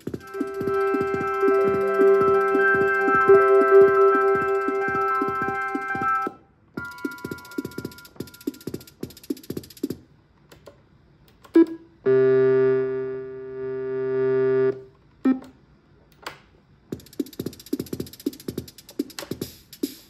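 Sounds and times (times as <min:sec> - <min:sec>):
drum machine hits: 0:00.0 - 0:10.1, 0:16.9 - 0:20.0
buzzy synth tone: 0:00.1 - 0:06.3, 0:12.1 - 0:14.8.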